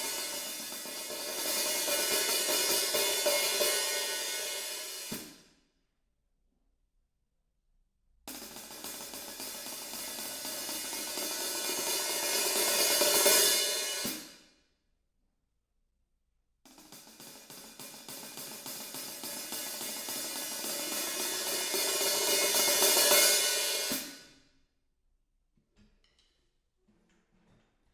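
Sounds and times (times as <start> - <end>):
cymbal roll: 0.0 - 5.3.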